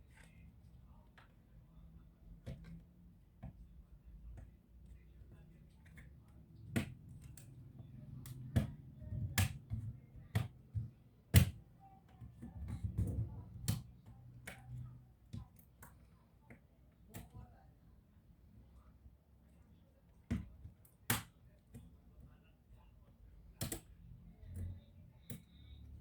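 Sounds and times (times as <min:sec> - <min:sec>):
small tools clicking and tapping: 0:23.6 - 0:25.7.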